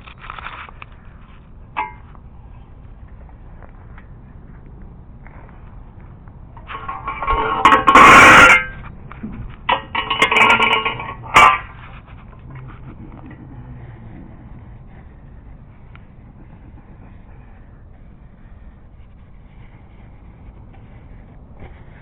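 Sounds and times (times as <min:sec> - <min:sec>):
sharp metal clank: 0:06.6 - 0:08.8
metal parts clattering and scraping: 0:06.6 - 0:08.9, 0:09.6 - 0:12.3.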